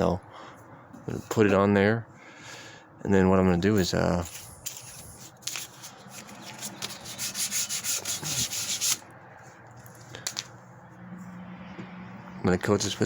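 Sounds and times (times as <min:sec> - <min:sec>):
hand rubbing on wood: 0:04.2 - 0:09.0.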